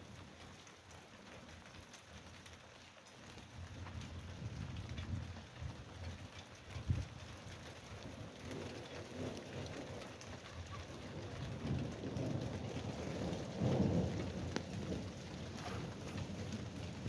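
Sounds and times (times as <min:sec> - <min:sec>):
rain drop ticks: 0:00.0 - 0:17.0
steady rain falling: 0:00.0 - 0:17.0
low rumbles of thunder: 0:03.6 - 0:17.0.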